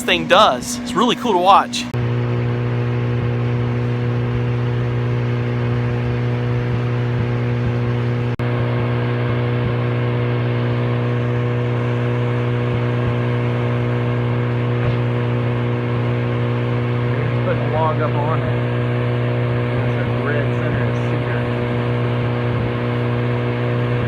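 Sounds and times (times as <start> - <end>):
sawmill engine running: 0.0 - 2.0, 19.3 - 24.0.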